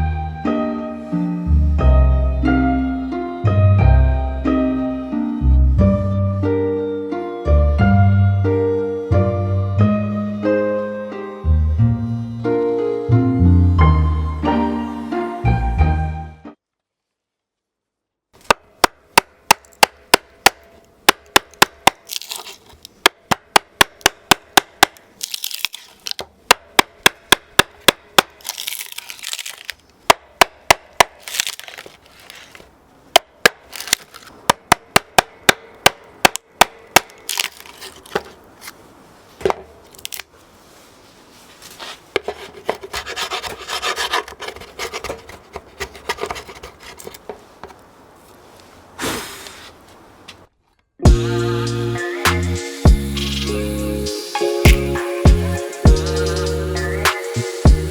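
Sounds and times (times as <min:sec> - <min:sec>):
scraping or rubbing: 0:40.6 - 0:50.0.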